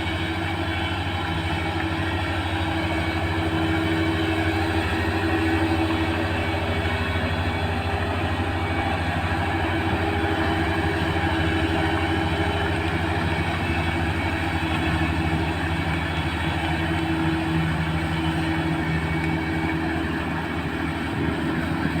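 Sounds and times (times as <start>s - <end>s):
combine harvester engine drone: 0.0s - 22.0s.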